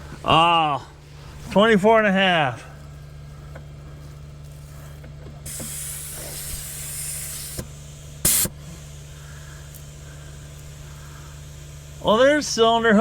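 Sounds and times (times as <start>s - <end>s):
steady low hum: 0.0s - 13.0s
air hissing at tire valve: 2.8s - 13.0s.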